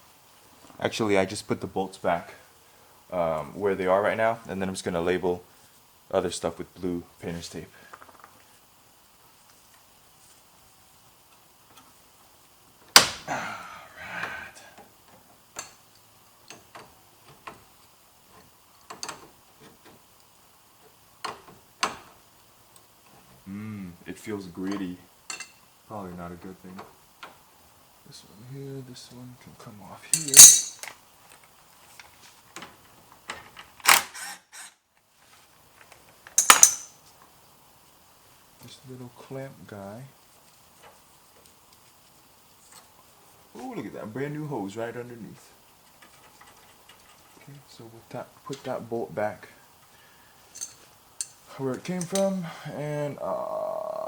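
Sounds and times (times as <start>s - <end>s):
tools rattling and rustling: 30.2s - 30.9s, 36.3s - 37.0s, 50.5s - 52.4s.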